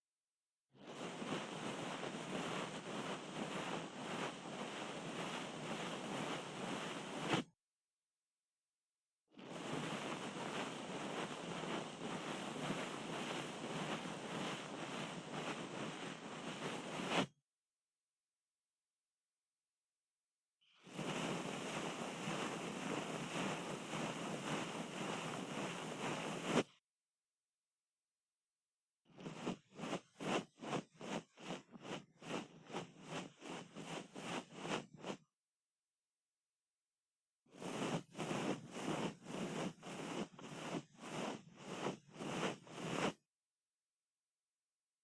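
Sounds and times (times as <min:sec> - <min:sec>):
scratchy rustle on microphone ear: 0:00.9 - 0:07.5, 0:09.5 - 0:17.3, 0:20.9 - 0:26.7, 0:29.1 - 0:35.3, 0:37.5 - 0:43.2.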